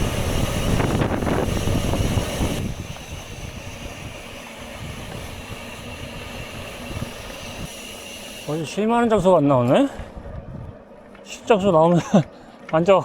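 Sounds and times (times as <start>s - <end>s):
wind rushing on microphone: 0.0s - 8.0s, 10.0s - 10.8s.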